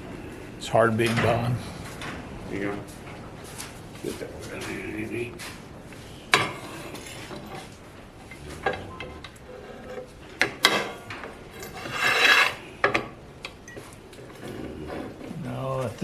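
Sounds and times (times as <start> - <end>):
metal scraping on metal: 6.3 - 13.2.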